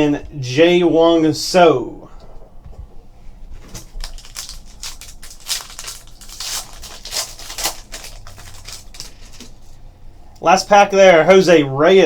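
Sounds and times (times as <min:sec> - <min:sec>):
wrapper crinkling: 0:03.4 - 0:09.8.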